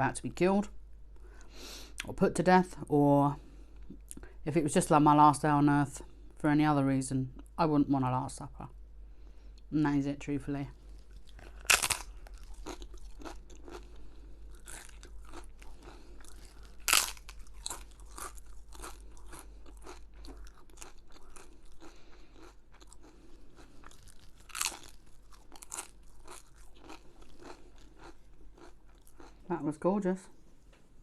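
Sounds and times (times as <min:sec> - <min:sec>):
chewing crunchy food: 0:10.7 - 0:29.6.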